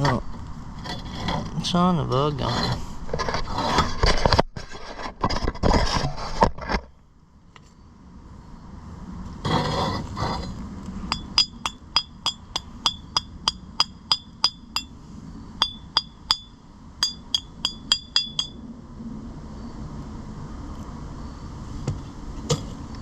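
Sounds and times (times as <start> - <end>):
scraping noise: 0.0 - 6.9, 9.4 - 11.2
hammer striking steel: 11.1 - 15.0, 15.6 - 18.6.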